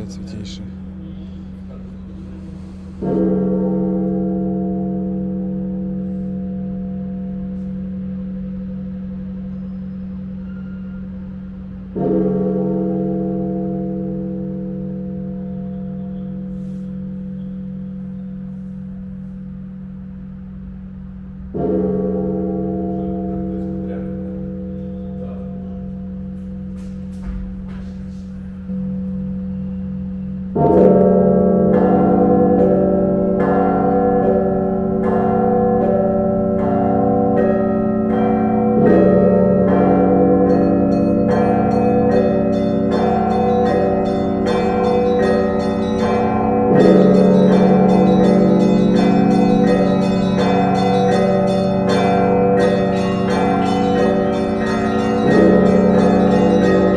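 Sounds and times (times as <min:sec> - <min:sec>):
low bell hum: 0:00.0 - 0:27.5, 0:28.1 - 0:56.9
church bell ringing: 0:00.0 - 0:56.9
small bells ringing quickly: 0:40.6 - 0:56.9.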